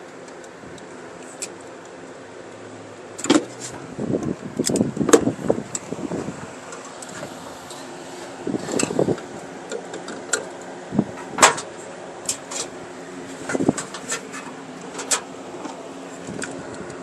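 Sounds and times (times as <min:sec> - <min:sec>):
steady low hum: 0:00.0 - 0:17.0
wire strippers clicking: 0:03.0 - 0:06.0, 0:08.6 - 0:17.0.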